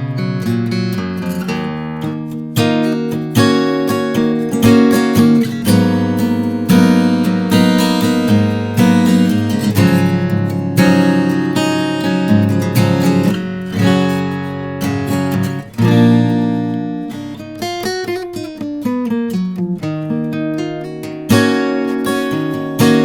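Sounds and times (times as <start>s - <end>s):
acoustic guitar strumming and picking: 0.0s - 23.0s.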